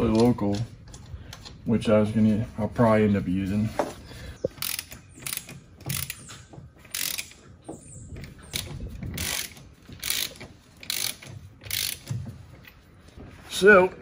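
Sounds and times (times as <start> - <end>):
hand ratchet clicking: 4.5 - 7.4, 8.2 - 12.3.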